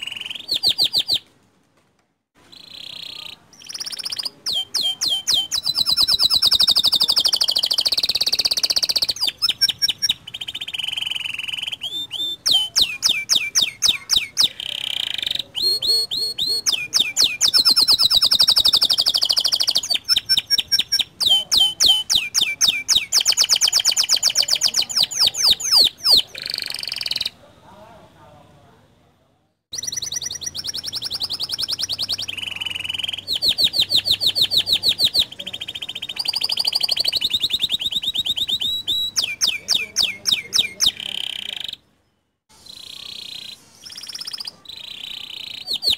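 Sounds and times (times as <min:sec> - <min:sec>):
canary singing trills: 0:00.0 - 0:01.3, 0:02.4 - 0:27.4, 0:29.7 - 0:45.9.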